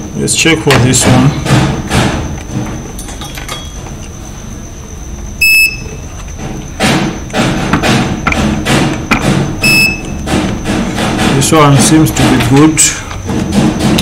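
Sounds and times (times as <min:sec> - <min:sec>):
multimeter beeps: 0:05.4 - 0:06.1, 0:09.6 - 0:10.2
dull rhythmic thumps: 0:06.4 - 0:14.0.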